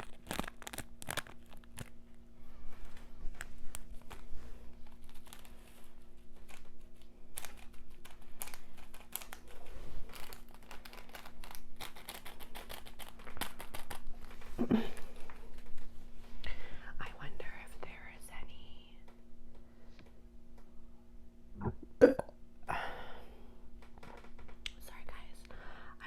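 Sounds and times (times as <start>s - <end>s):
plastic packaging crinkling: 0.0s - 15.8s
low throat sound: 21.6s - 22.3s.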